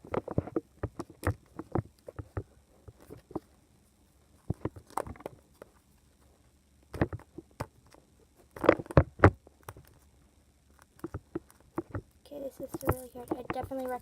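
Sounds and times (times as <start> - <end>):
plastic and tape crinkling: 10.7 - 14.0.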